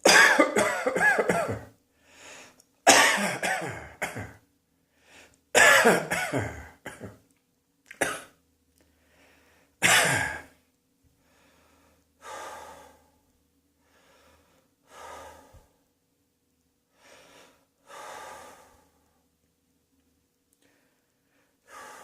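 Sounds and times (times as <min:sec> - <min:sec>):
person coughing: 0:00.0 - 0:01.7, 0:02.9 - 0:04.4, 0:05.6 - 0:07.2, 0:07.9 - 0:08.4, 0:09.8 - 0:10.5
person breathing in and out: 0:01.9 - 0:02.6, 0:04.8 - 0:05.4, 0:08.8 - 0:09.8, 0:11.2 - 0:15.9, 0:16.9 - 0:19.3, 0:20.6 - 0:22.0.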